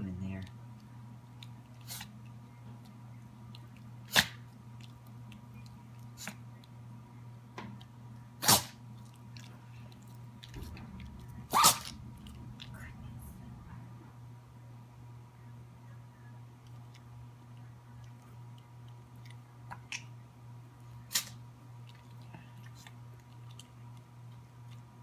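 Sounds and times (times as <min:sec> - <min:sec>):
low steady hum: 0:00.0 - 0:25.0
pet sneezing: 0:01.8 - 0:02.1, 0:04.0 - 0:04.4, 0:08.4 - 0:08.8, 0:11.5 - 0:11.9, 0:21.1 - 0:21.4.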